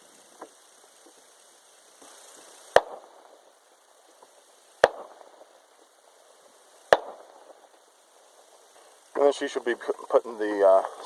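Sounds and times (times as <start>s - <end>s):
distant rifle shots with echo: 2.8s - 3.4s, 4.8s - 5.5s, 6.9s - 7.7s.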